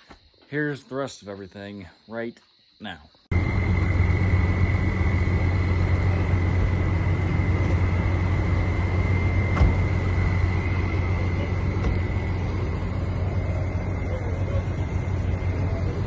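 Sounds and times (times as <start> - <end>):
thin steady whine: 3.2 - 16.0
vehicle engine and road noise: 3.3 - 16.0.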